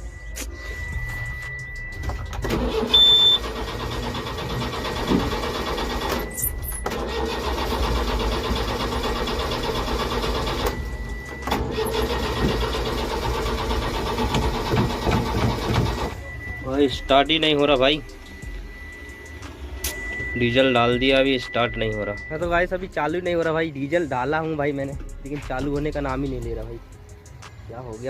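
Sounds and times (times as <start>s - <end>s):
high steady beep: 0.0s - 3.6s, 4.2s - 6.9s, 9.9s - 13.9s, 15.5s - 23.5s
diesel engine cranking on starter: 2.3s - 16.2s.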